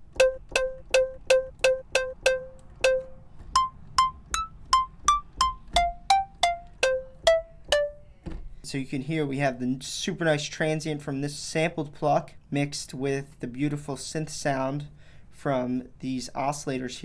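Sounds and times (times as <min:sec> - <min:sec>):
synth pluck melody: 0:00.0 - 0:08.1.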